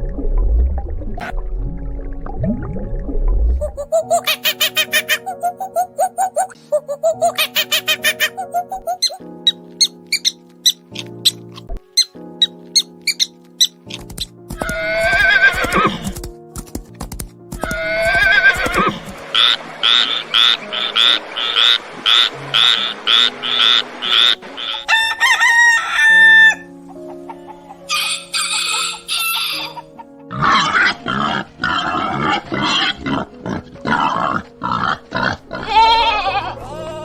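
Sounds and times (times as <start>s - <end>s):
background music: 0.0s - 37.0s
chickens clucking: 3.6s - 11.4s, 26.8s - 30.3s
rooster crowing: 24.6s - 26.7s, 27.8s - 29.8s.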